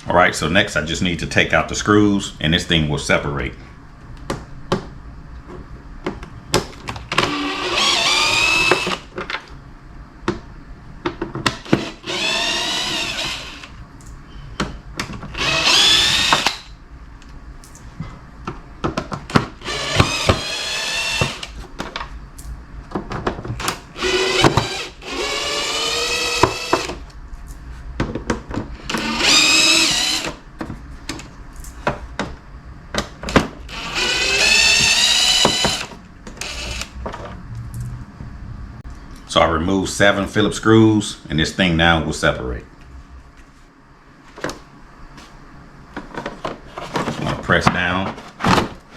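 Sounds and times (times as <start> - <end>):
power drill motor whining: 7.1 - 9.1, 11.5 - 13.7, 15.3 - 16.7, 19.5 - 21.6, 23.6 - 27.0, 28.8 - 30.4, 33.3 - 37.4.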